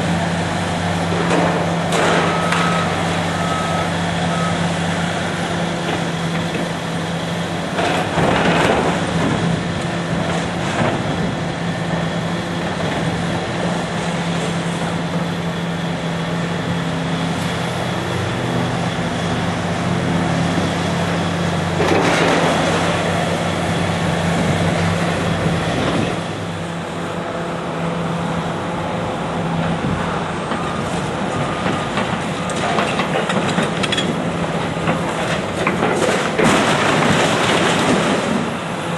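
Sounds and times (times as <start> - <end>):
diesel engine of heavy machinery: 0.0 - 38.9
rough noisy clatter: 1.1 - 2.8, 7.7 - 11.3, 21.7 - 23.5, 31.3 - 38.9.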